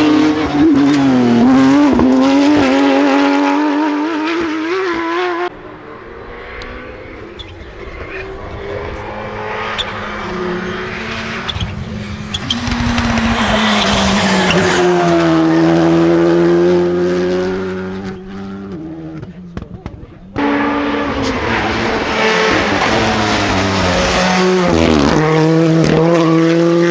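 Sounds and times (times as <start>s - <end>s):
rally car passing at speed: 0.0s - 26.9s
tyre noise: 5.5s - 26.3s.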